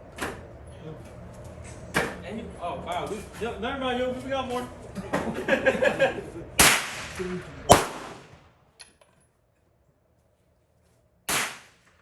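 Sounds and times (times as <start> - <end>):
pistol shots with echo: 6.6 - 8.4, 11.3 - 11.8.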